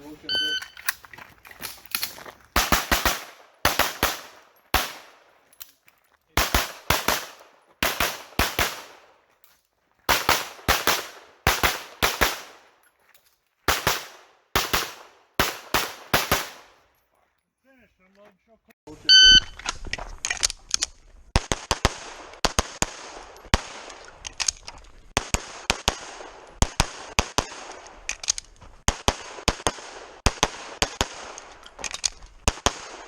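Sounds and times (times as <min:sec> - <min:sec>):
pistol shots echoing: 0:02.6 - 0:05.6, 0:06.4 - 0:09.3, 0:10.1 - 0:12.8, 0:13.7 - 0:16.8.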